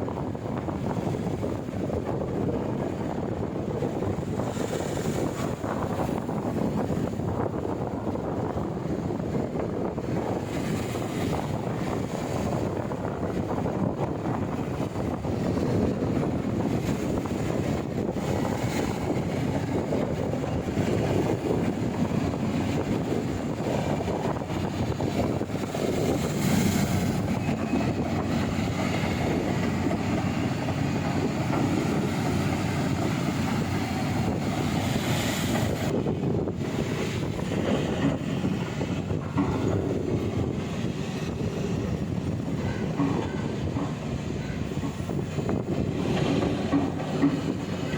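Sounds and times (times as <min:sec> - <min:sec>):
wind buffeting microphone: 0:00.0 - 0:47.9
excavator diesel engine running: 0:17.4 - 0:47.9.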